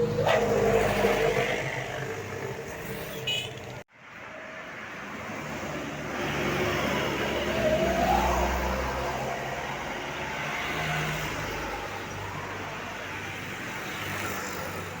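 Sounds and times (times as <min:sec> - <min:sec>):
bus engine humming: 0:00.0 - 0:03.9
road and traffic noise: 0:00.0 - 0:15.0.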